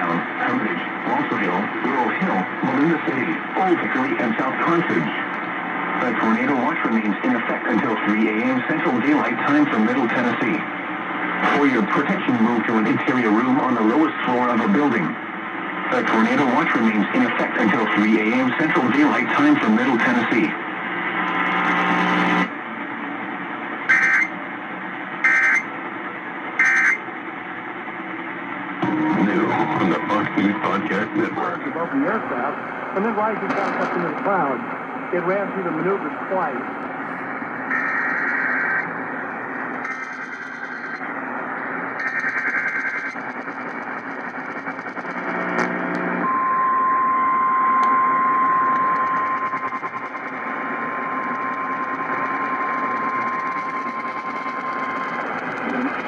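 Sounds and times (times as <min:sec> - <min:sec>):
radio hiss: 0:00.0 - 0:23.1, 0:28.8 - 0:46.4, 0:48.8 - 0:56.0
raspy two-tone data bursts: 0:23.9 - 0:24.3, 0:26.6 - 0:27.0, 0:37.7 - 0:38.9, 0:39.8 - 0:41.0, 0:42.0 - 0:45.4
steady attention tone: 0:23.9 - 0:24.4, 0:25.2 - 0:25.7, 0:26.6 - 0:27.0, 0:28.8 - 0:56.0.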